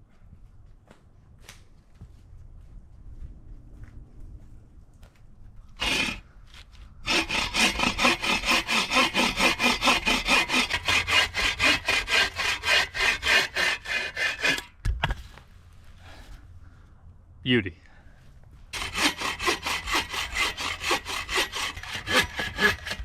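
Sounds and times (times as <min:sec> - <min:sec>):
hand saw cutting wood: 0:05.8 - 0:06.3, 0:07.0 - 0:14.8, 0:18.8 - 0:23.0.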